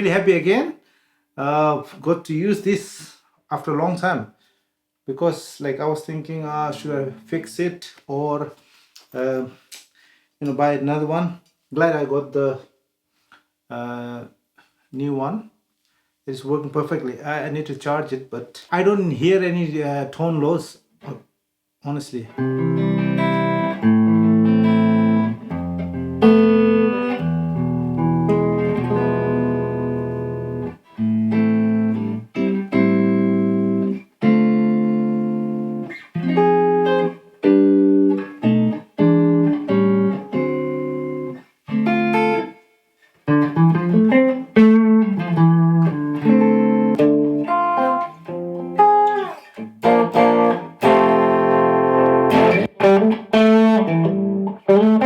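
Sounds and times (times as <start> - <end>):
clean electric guitar: 22.3 - 42.6, 43.2 - 55.0.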